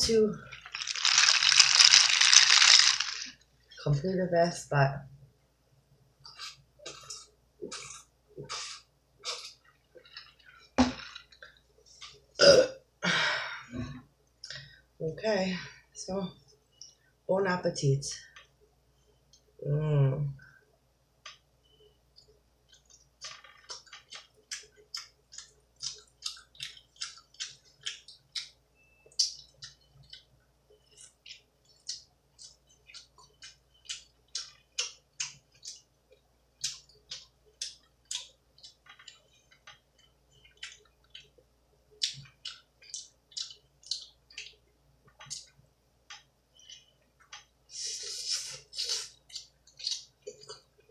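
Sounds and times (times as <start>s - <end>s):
chewing with wet mouth smacks: 22.2s - 41.4s, 42.0s - 47.5s, 48.8s - 50.9s.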